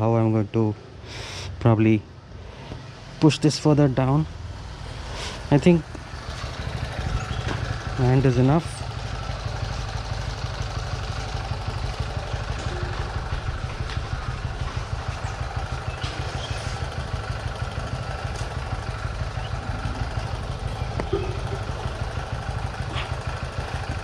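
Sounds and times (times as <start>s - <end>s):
engine idling: 3.6s - 24.0s.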